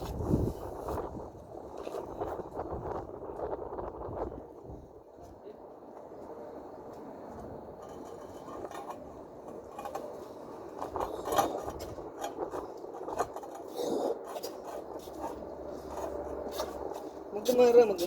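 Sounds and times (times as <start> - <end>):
hand tools scraping on tile: 7.8 - 17.1.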